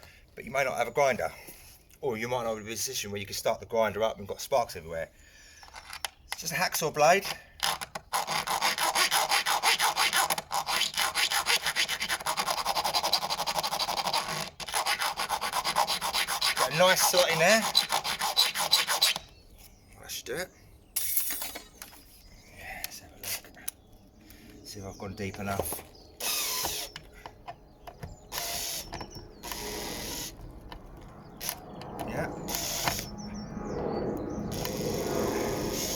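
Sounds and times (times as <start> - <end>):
hand tool ratcheting on screw: 7.2 - 19.3, 25.7 - 30.4.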